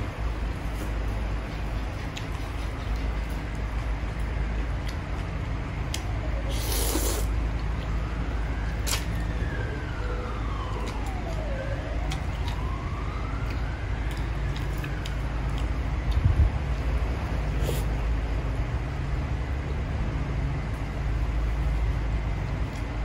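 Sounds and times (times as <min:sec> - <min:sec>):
steady low hum: 0:00.0 - 0:23.0
siren wailing: 0:05.7 - 0:16.1.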